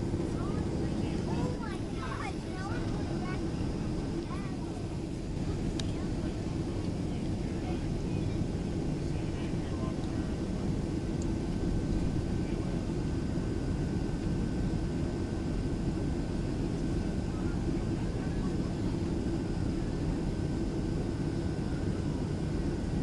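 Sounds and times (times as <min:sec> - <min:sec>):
airliner cabin rumble: 0:00.0 - 0:23.0
faint steady whine: 0:00.0 - 0:23.0.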